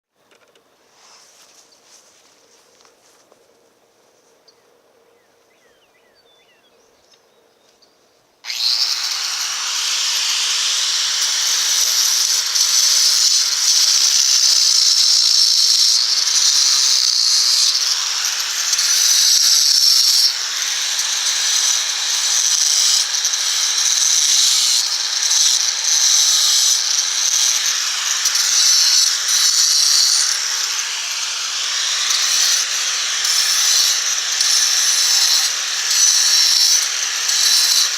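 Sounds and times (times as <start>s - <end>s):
power grinder cutting stone: 8.4s - 37.9s.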